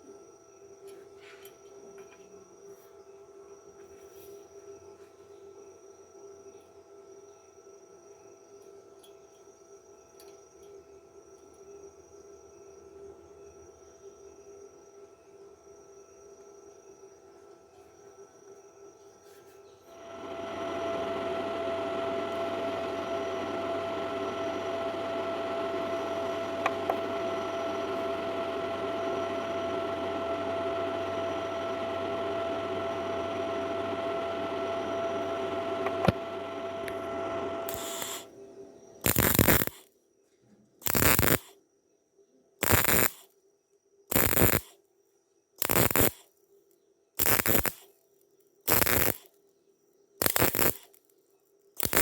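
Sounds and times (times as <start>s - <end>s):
welding arc crackling: 37.7s - 38.3s, 39.0s - 39.8s, 40.8s - 41.5s, 42.6s - 43.2s, 44.1s - 44.7s, 45.6s - 46.2s, 47.2s - 47.8s, 48.7s - 49.3s, 50.2s - 51.0s, 51.8s - 52.0s.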